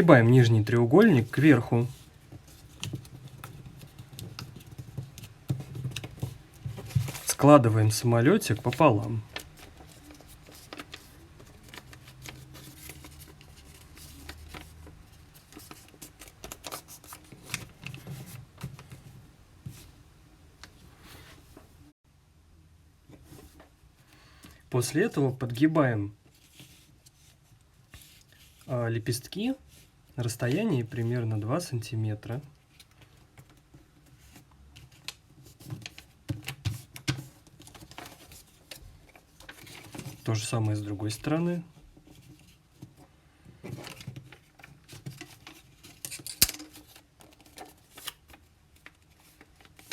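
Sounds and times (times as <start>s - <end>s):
paper folding and creasing: 0.0s - 19.1s, 32.7s - 40.9s, 43.6s - 49.9s.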